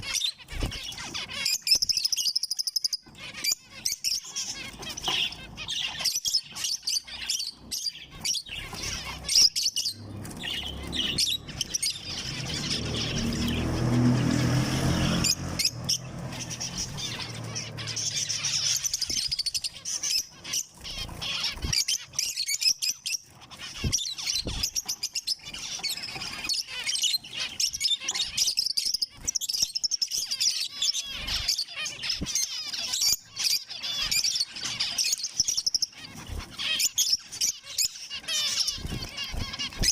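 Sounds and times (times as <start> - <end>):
finches chirping: 0.0 - 39.9
low rumbling noise: 9.9 - 18.9.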